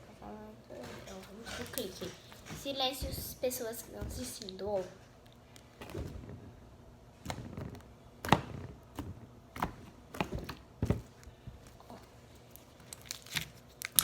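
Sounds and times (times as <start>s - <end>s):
slime popping in hands: 12.9s - 14.0s.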